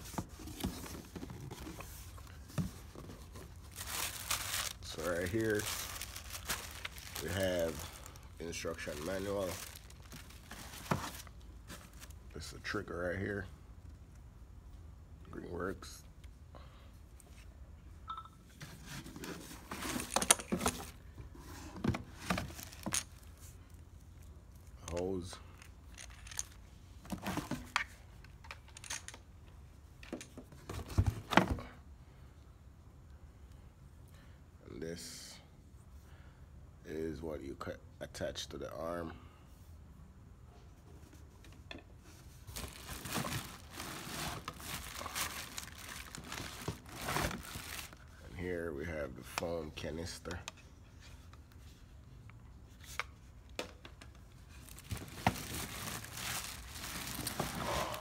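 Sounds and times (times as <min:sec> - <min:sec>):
plastic wrap crinkling: 0:03.5 - 0:11.3, 0:42.5 - 0:48.0, 0:54.6 - 0:58.0.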